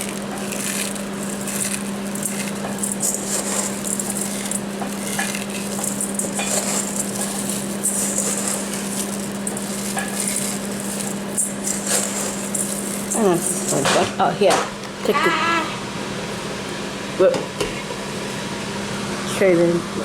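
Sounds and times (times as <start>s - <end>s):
food sizzling in a pan: 0.0s - 14.0s
constant low hum: 0.0s - 20.0s.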